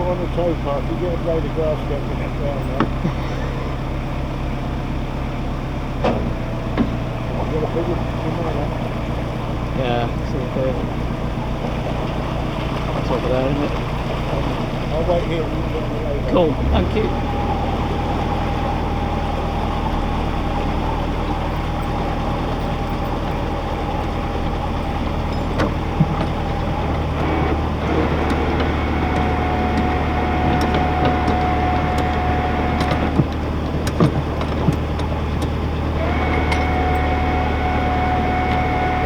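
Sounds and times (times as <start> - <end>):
diesel engine at tickover: 0.0 - 39.0
thin steady whine: 14.9 - 34.6.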